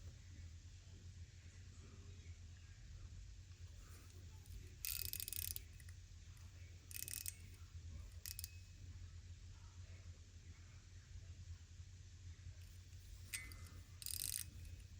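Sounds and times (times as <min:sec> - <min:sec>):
ratchet clicking: 0:04.0 - 0:05.9, 0:06.9 - 0:08.6, 0:12.6 - 0:14.9.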